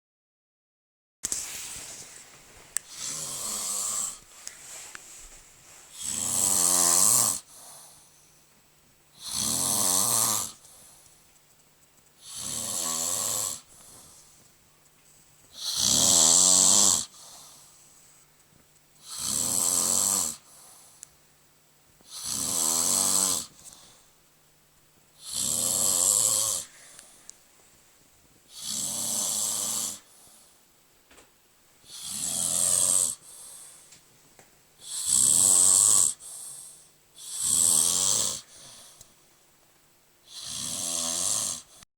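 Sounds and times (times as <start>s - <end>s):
quiet breathing: 1.6s - 11.4s, 12.1s - 24.4s, 25.1s - 30.8s, 31.8s - 35.1s, 36.1s - 39.5s
loud rattling snoring: 2.9s - 4.2s, 5.9s - 7.5s, 9.2s - 10.9s, 12.2s - 14.1s, 15.5s - 17.7s, 19.0s - 20.6s, 22.0s - 23.6s, 25.2s - 27.0s, 28.5s - 30.1s, 31.8s - 33.3s, 34.8s - 38.9s, 40.2s - 41.8s.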